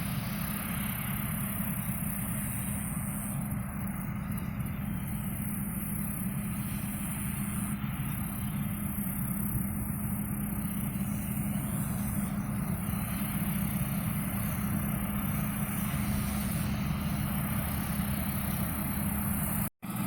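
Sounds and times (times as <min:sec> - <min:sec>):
combine harvester running: 0:00.0 - 0:20.0.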